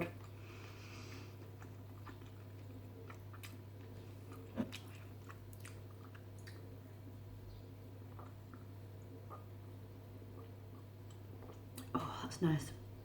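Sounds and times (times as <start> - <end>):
person chewing: 1.1 - 7.0, 8.1 - 11.9.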